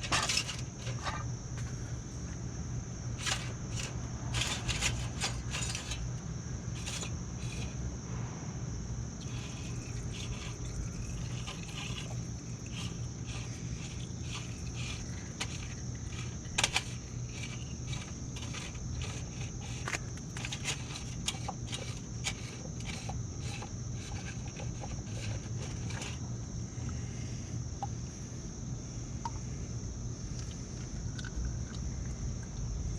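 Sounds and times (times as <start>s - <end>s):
tools clicking and scraping: 0.0s - 1.8s, 3.2s - 6.2s, 6.8s - 7.8s, 9.2s - 26.3s
steady background hum: 0.0s - 32.9s.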